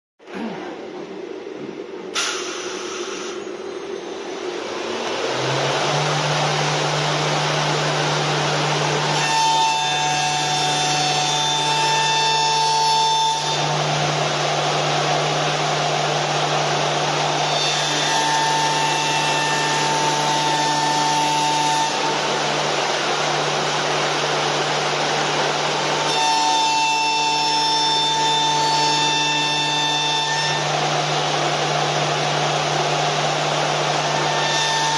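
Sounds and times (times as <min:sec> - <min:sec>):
lathe rushing machine noise: 0:00.4 - 0:34.9
low motor hum: 0:03.5 - 0:09.2.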